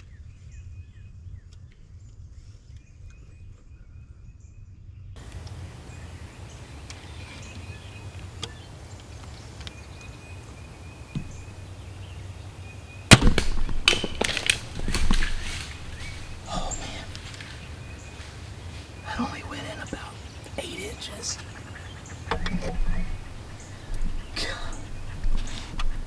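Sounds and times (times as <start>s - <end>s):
insect trill: 5.2s - 26.0s
animal crashing through brush: 7.9s - 19.0s
bow and arrow crack: 9.6s - 18.4s.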